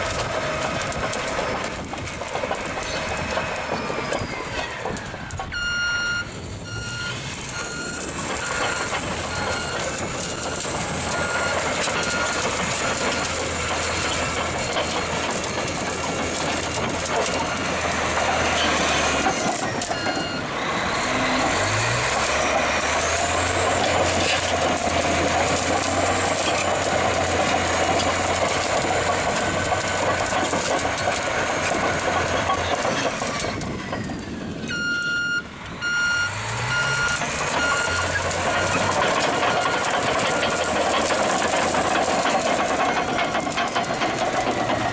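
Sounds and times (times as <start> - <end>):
diesel engine under load: 0.0 - 44.9
reversing alarm beeping: 5.5 - 17.9, 18.6 - 21.8, 34.0 - 40.7.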